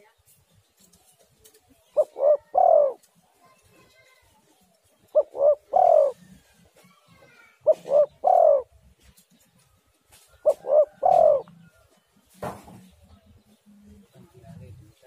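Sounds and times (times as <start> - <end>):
dove cooing: 1.9 - 3.1, 5.1 - 6.6, 7.5 - 9.0, 10.4 - 11.7.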